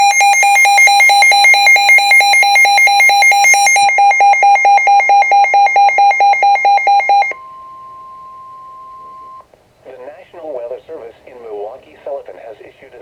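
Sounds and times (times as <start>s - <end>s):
rapid buzzy alarm beeps: 0.0s - 9.4s.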